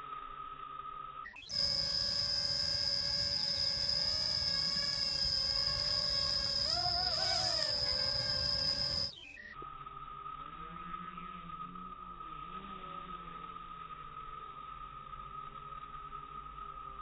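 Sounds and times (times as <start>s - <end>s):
quadcopter motors whining: 1.4s - 9.5s.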